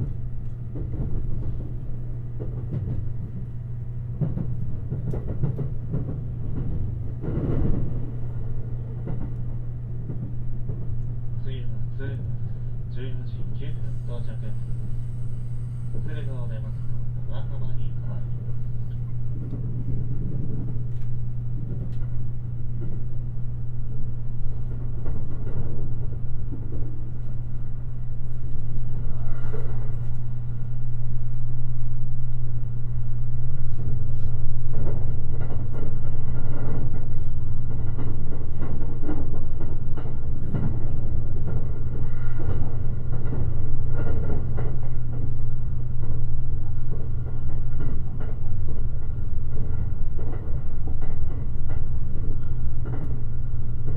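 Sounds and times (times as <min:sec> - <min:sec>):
train interior hum: 0:00.0 - 0:53.9
wheels rumbling on rail: 0:00.0 - 0:53.9
clatter: 0:04.2 - 0:08.2, 0:34.7 - 0:53.9.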